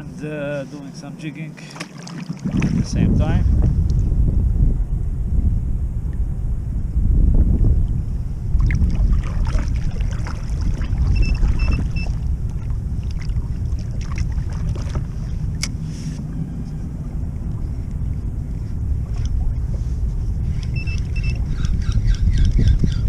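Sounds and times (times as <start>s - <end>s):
water splashing against hull: 0.7s - 4.4s, 7.2s - 23.0s
strong wind on microphone: 2.4s - 23.0s
short high beeps: 11.1s - 12.1s, 20.7s - 21.4s.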